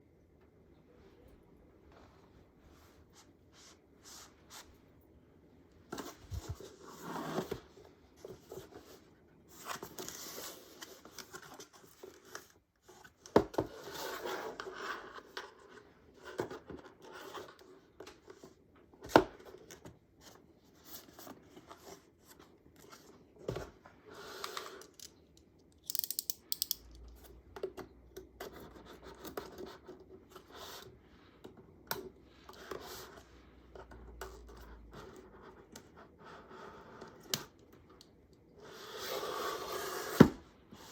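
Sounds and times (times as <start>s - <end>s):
small clicks: 25.0s - 27.1s.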